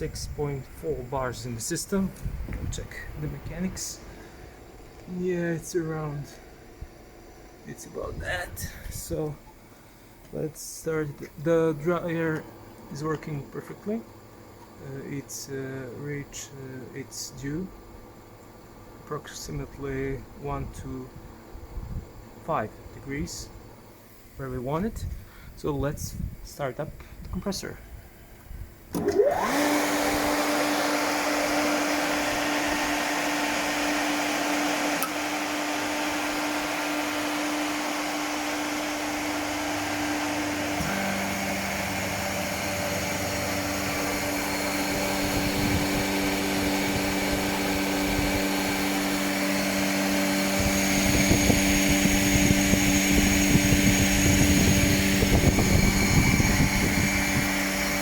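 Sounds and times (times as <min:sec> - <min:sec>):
air compressor motor whine: 0:00.0 - 0:13.2, 0:28.5 - 0:58.0
air compressor running hum: 0:00.0 - 0:13.2, 0:28.6 - 0:58.0.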